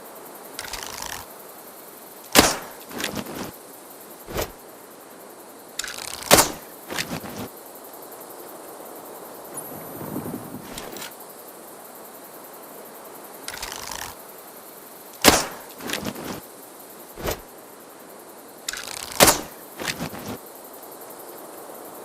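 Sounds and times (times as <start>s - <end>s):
rustle: 0.0s - 22.0s
bow shot snap: 0.6s - 1.3s, 2.3s - 3.5s, 4.3s - 4.6s, 5.8s - 7.5s, 13.5s - 14.2s, 15.2s - 16.4s, 17.2s - 17.5s, 18.7s - 20.4s.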